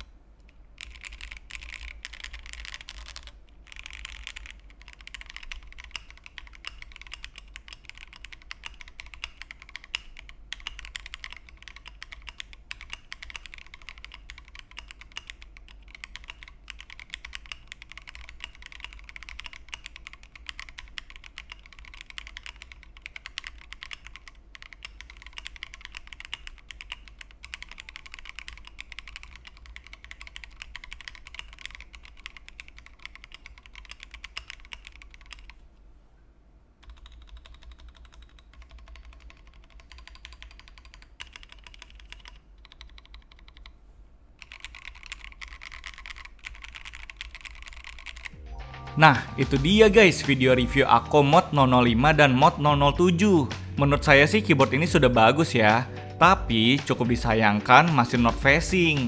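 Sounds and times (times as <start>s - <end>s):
fast typing on mechanical keyboard: 0.8s - 35.6s, 36.8s - 43.8s, 44.4s - 48.4s.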